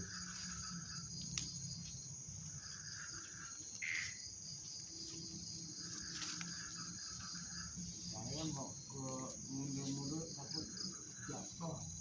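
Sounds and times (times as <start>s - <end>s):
crickets trilling: 0.0s - 12.0s
loud insect chirp: 0.0s - 12.0s
low insect buzz: 0.0s - 12.0s.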